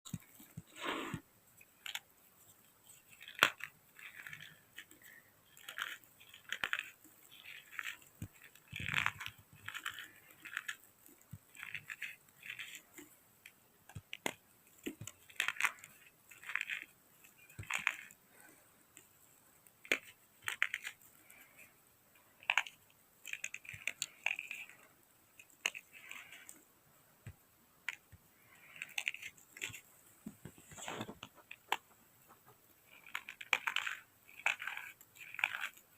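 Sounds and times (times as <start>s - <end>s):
person chewing crunchy chalk: 2.8s - 13.2s, 27.9s - 35.9s.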